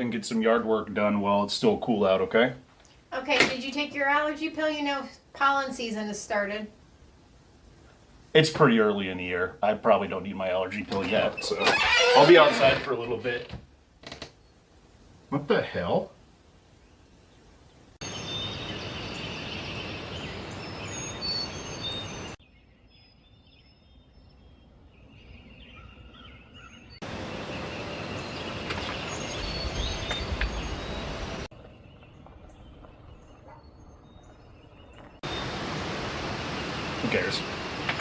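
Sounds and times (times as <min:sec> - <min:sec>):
steady noisy hiss: 0:00.0 - 0:22.4, 0:27.0 - 0:31.5, 0:35.2 - 0:38.0
birds chirping: 0:00.0 - 0:38.0.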